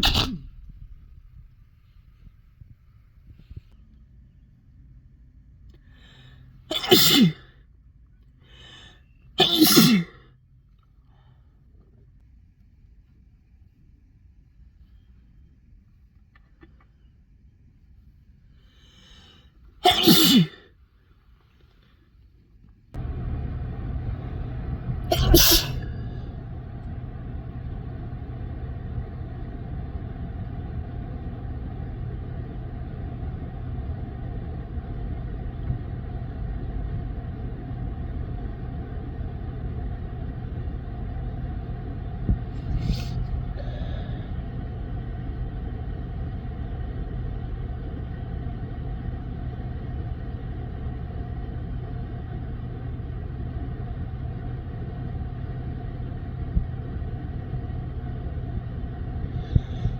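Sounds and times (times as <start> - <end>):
person sneezing: 0.0 - 0.5, 6.7 - 7.5, 9.4 - 10.2, 19.8 - 20.6, 25.1 - 26.0, 42.6 - 44.3
low rumble with hum: 0.0 - 59.9.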